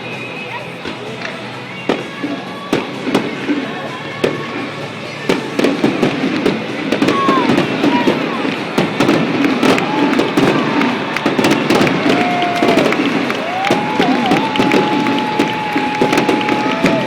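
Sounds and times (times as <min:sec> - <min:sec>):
firework cracks and bangs: 0:00.8 - 0:17.0
firework whistles gliding in pitch: 0:09.0 - 0:17.0.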